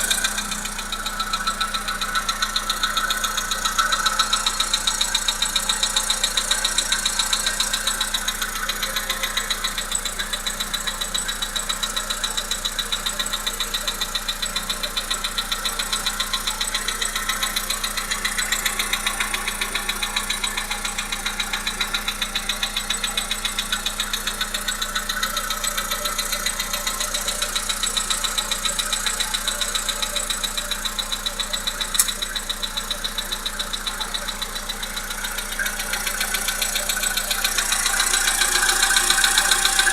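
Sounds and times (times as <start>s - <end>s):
car engine knocking: 0.0s - 39.9s
sharp click: 31.9s - 32.4s.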